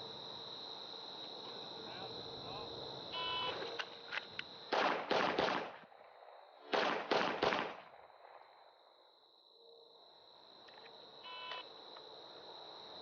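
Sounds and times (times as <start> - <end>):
handgun shots: 4.7 - 5.8, 6.7 - 7.9.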